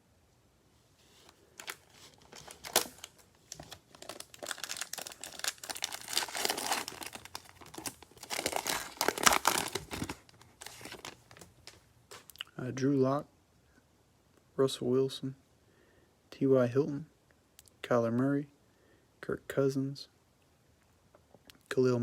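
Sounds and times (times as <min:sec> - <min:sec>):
cellophane wrapper crinkling and tearing: 0:01.6 - 0:12.5.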